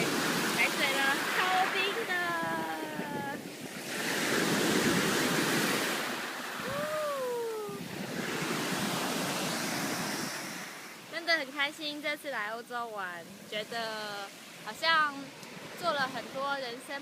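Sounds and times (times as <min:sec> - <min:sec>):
sea waves on shore: 0:00.0 - 0:17.0
brief voice-like cry: 0:06.6 - 0:07.8.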